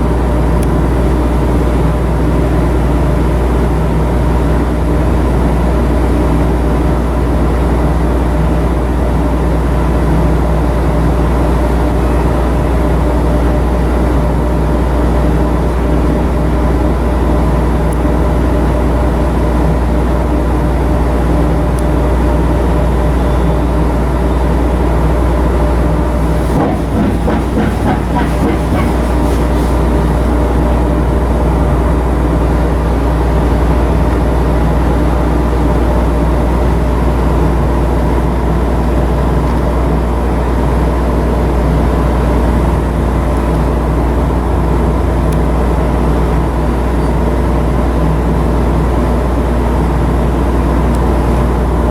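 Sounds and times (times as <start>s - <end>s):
ship diesel machinery droning: 25.8s - 33.4s
rustling and clicking: 26.2s - 30.7s.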